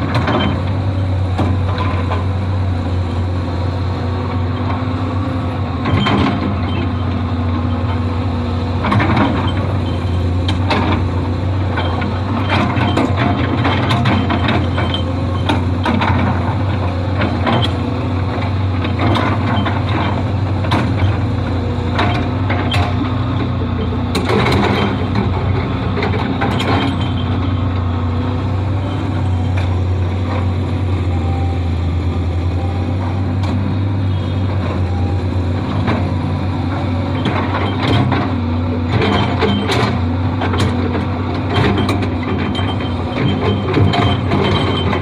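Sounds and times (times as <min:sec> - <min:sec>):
excavator diesel engine running: 0:00.0 - 0:45.0
metallic clanks and knocks: 0:21.9 - 0:27.4.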